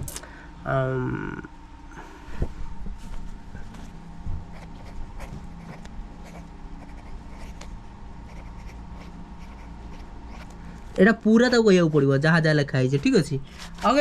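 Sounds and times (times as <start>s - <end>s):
faint steady hum: 0.0s - 14.0s
pen scratching on paper: 4.5s - 7.7s, 8.3s - 10.5s.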